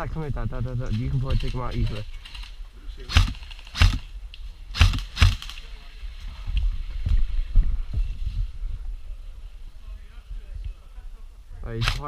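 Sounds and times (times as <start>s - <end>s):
airsoft gun shots: 3.1s - 4.1s, 4.7s - 5.5s, 11.8s - 12.0s.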